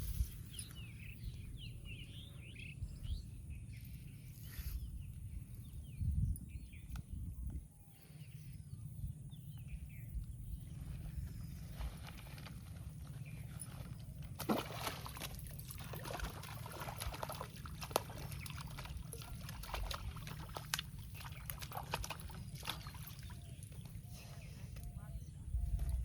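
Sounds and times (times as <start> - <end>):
steady low rumble: 0.0 - 26.0
water sloshing and splashing: 11.3 - 24.1.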